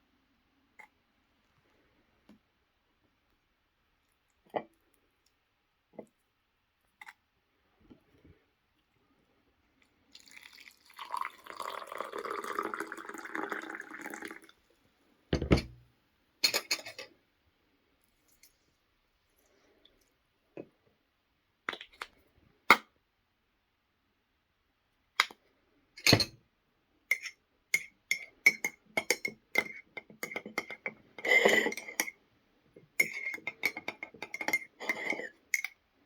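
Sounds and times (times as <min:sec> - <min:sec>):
liquid pouring into container: 0:10.1 - 0:14.6
glass and utensils clinking: 0:16.4 - 0:17.1, 0:26.0 - 0:26.4, 0:27.1 - 0:32.2, 0:33.0 - 0:35.7.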